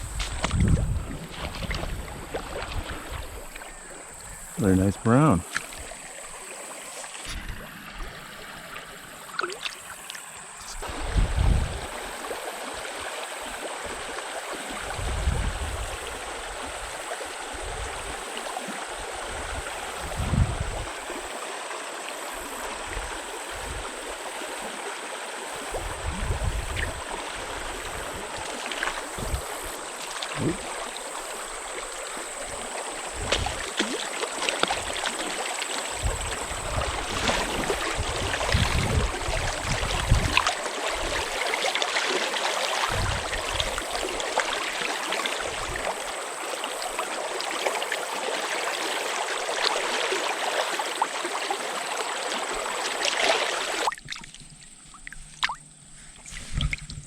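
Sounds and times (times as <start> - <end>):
wind rumble on microphone: 0.0 - 3.5, 10.7 - 12.1, 14.8 - 16.9, 17.5 - 18.2, 19.1 - 21.0, 25.8 - 28.4, 29.0 - 29.8, 32.5 - 33.7, 35.9 - 41.3, 42.9 - 44.2, 45.5 - 45.9, 56.3 - 57.0
stream water rushing: 0.0 - 55.6.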